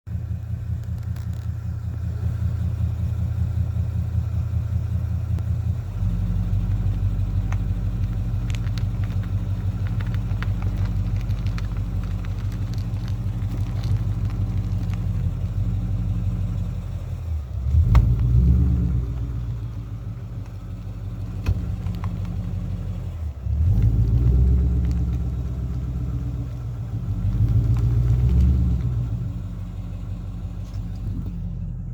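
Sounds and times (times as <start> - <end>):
car engine running at low speed: 0.1 - 31.9.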